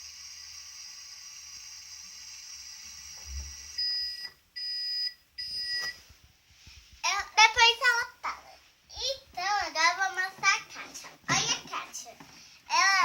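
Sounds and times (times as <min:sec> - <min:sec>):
toy dishwasher washing hiss: 0:00.0 - 0:02.2.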